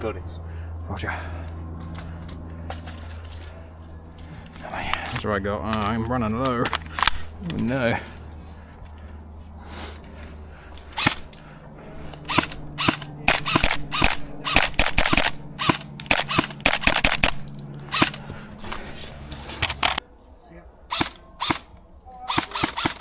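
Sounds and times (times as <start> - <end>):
airsoft gun shots: 11.0 - 11.3, 12.2 - 18.2, 20.9 - 21.7, 22.3 - 23.0.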